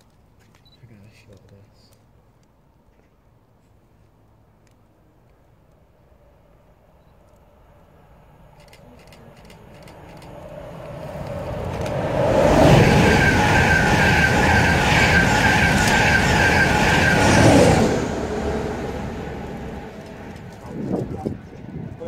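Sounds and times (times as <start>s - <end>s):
train passing at speed: 6.1s - 22.0s.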